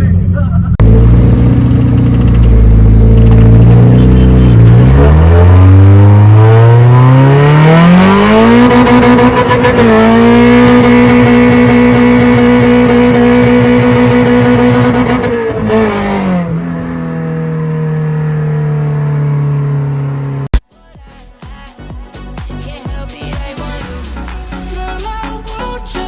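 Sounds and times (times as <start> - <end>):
car engine accelerating hard: 0.7 - 20.6.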